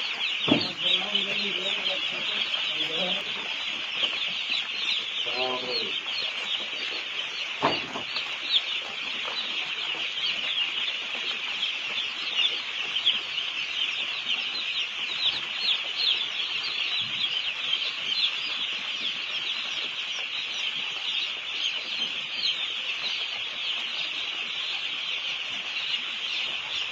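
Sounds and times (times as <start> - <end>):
chicks peeping: 0.0 - 26.9
low thump: 0.5 - 0.8.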